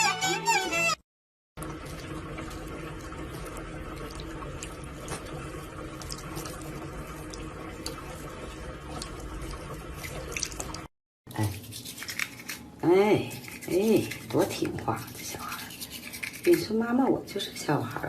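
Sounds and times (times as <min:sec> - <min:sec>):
small splashes and ticks: 0:01.6 - 0:10.9
water running into sink: 0:01.6 - 0:10.9.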